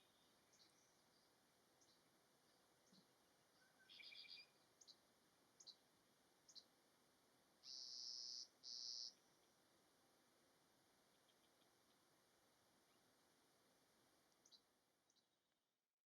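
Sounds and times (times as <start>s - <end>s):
bird buzzes: 7.6s - 9.2s.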